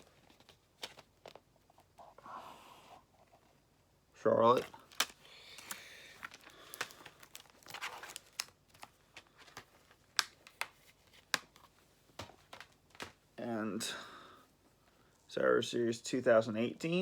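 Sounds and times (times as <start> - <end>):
crinkling rustle: 0.0 - 2.1, 4.4 - 13.2.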